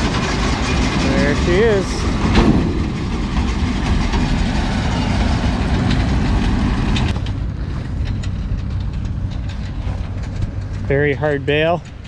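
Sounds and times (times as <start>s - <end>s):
sharp metal clanks: 0.0s - 7.3s
baler machine noise: 0.0s - 12.0s
tractor engine drone: 0.0s - 12.0s.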